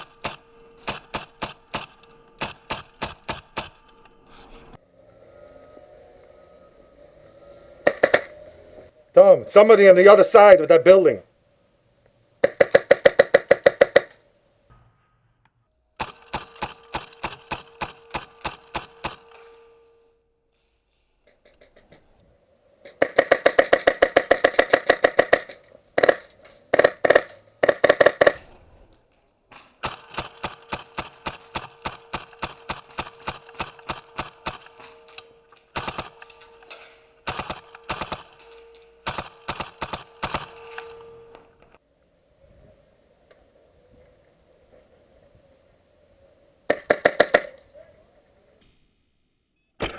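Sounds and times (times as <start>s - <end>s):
airsoft guns firing rapid shots: 0.0s - 3.8s, 7.8s - 8.3s, 12.4s - 14.2s, 16.0s - 19.3s, 22.9s - 28.5s, 29.8s - 34.8s, 35.7s - 36.2s, 37.2s - 38.4s, 39.0s - 40.6s, 46.7s - 47.6s.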